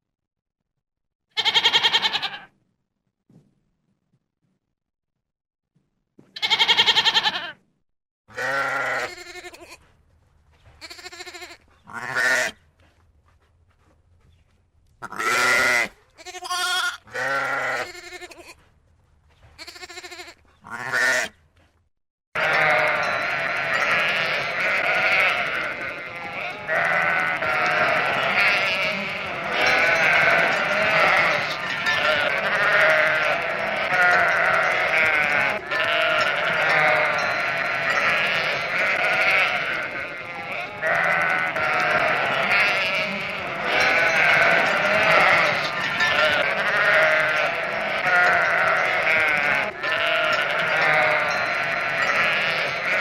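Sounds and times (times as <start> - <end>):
goats bleating: 1.4 - 2.5, 6.4 - 7.5, 8.3 - 9.8, 10.8 - 12.6, 15.0 - 18.6, 19.6 - 21.3, 22.4 - 53.0.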